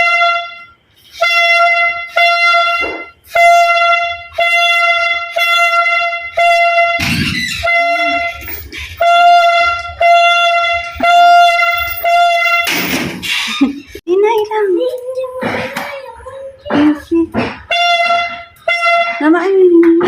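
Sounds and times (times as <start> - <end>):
toy party horn toots: 0.0 - 12.9, 17.6 - 19.3.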